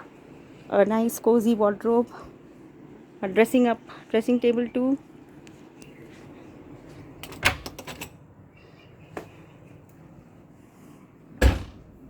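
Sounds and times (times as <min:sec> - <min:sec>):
door rattling and clicking: 0:07.2 - 0:08.2, 0:11.4 - 0:12.0
door shutting thump: 0:11.4 - 0:12.0.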